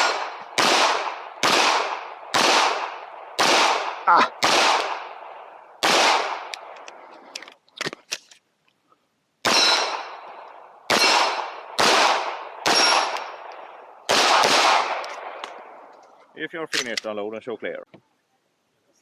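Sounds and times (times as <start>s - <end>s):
pistol shots echoing: 0.0s - 6.8s, 9.4s - 15.8s.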